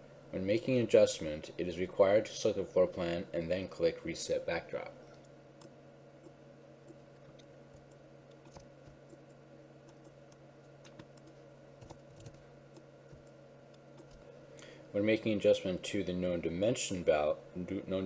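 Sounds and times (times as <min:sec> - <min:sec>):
keyboard and mouse clicks: 0:05.6 - 0:14.2.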